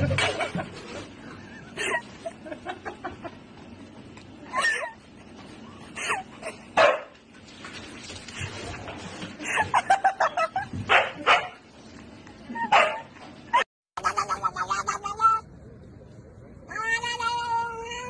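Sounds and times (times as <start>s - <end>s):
dog barking and yipping: 6.8s - 7.1s, 10.9s - 11.6s, 12.6s - 13.1s.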